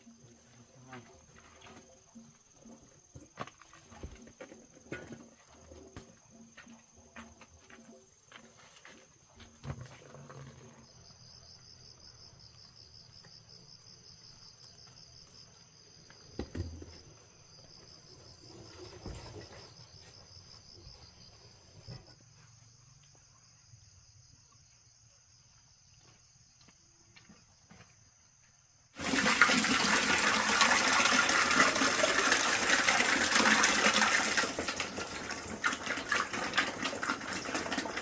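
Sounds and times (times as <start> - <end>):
insects trilling: 0.0 - 38.0.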